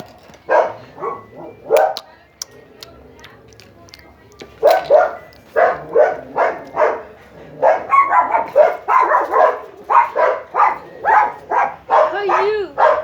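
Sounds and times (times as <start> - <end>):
dog barking: 0.4 - 2.0, 4.6 - 13.0.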